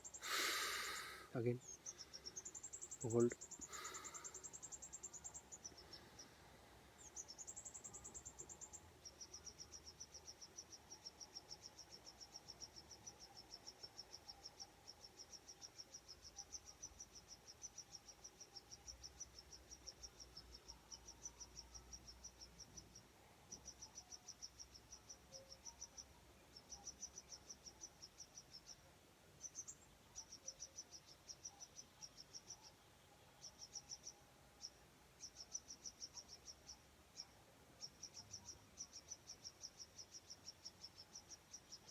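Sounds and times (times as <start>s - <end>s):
crickets chirping: 0.0s - 28.8s, 33.4s - 41.9s.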